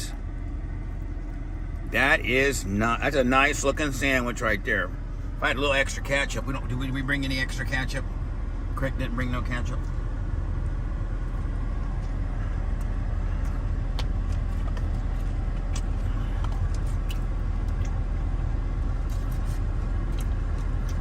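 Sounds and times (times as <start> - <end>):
car engine rumble in cabin: 0.0 - 21.0.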